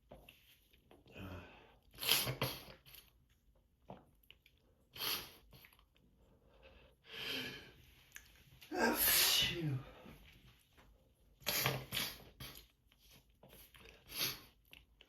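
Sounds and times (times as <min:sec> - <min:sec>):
nose sniffing: 0:05.0 - 0:05.7.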